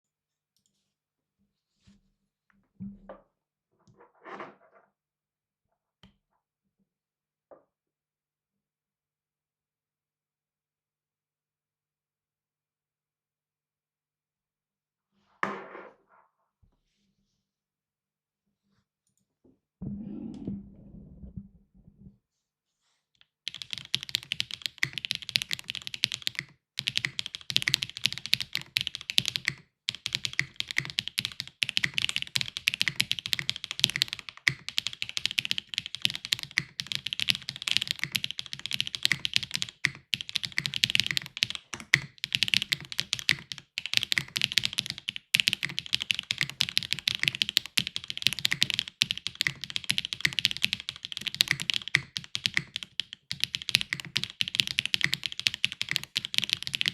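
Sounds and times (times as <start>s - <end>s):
fast mechanical keyboard typing: 23.5s - 56.9s.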